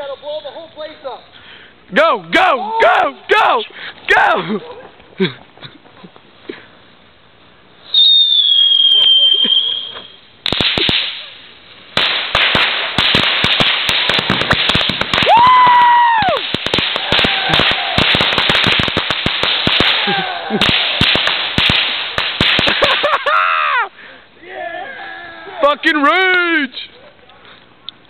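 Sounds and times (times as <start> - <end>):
whistling firework: 7.8 - 11.4, 12.0 - 23.0
fireworks hiss: 7.8 - 23.2
firecracker bangs and crackling: 7.9 - 23.4.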